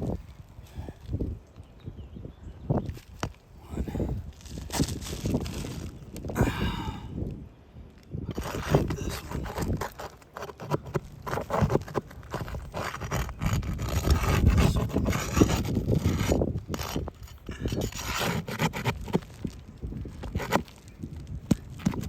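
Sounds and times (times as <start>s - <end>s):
roof shingles scraping: 4.4s - 6.1s, 8.3s - 22.0s
small clicks and crackles: 7.9s - 22.0s.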